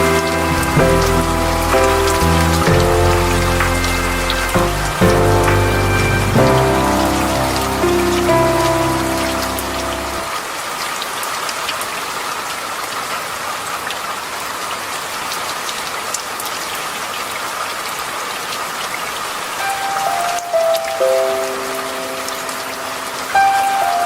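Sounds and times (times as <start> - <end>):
soft pitched music: 0.0 - 10.4
rain falling on a surface: 0.0 - 24.0.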